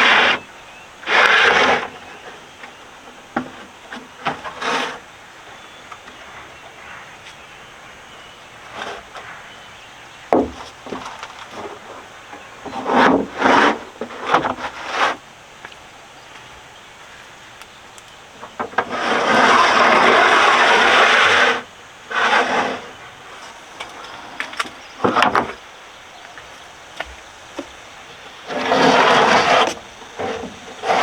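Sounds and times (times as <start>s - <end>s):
knocks and scrapes on wood: 10.3s - 15.2s, 18.4s - 25.6s, 28.4s - 31.0s
rasping on wood: 12.6s - 15.2s, 18.7s - 23.0s, 28.4s - 31.0s.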